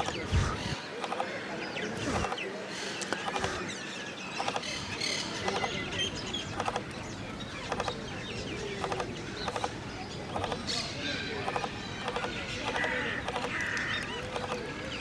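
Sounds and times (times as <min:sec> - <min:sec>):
small birds chirping: 0:00.0 - 0:15.0
woodpecker knocking on wood: 0:05.4 - 0:08.2, 0:11.5 - 0:15.0.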